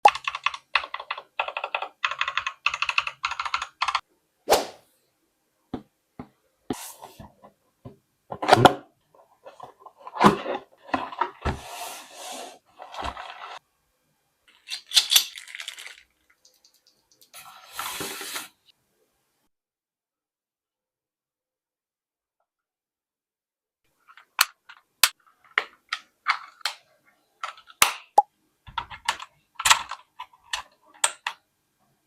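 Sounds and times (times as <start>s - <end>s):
mechanical keyboard typing: 0.0s - 4.0s.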